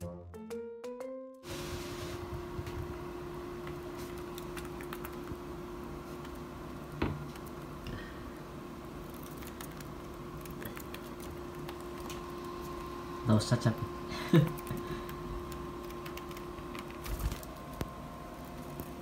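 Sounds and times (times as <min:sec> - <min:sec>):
steady low hum: 0:01.5 - 0:19.0.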